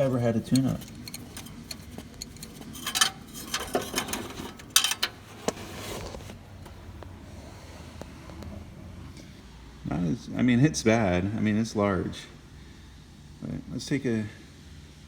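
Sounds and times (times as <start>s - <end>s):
metal hand tools clinking: 0.0s - 5.2s.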